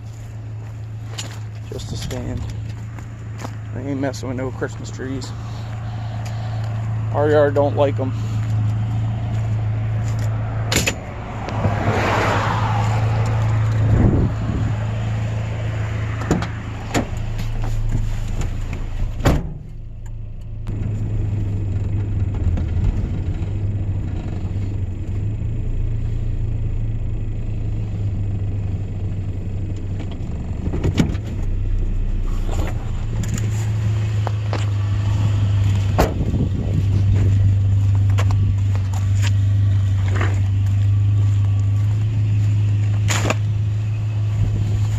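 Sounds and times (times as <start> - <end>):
vehicle engine droning: 0.0 - 44.9.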